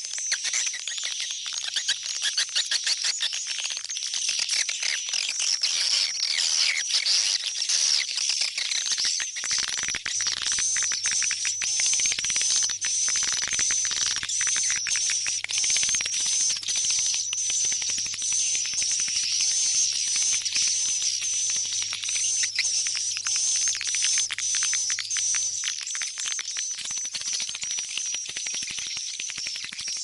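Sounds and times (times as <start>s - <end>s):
birds twittering: 10.2s - 25.7s.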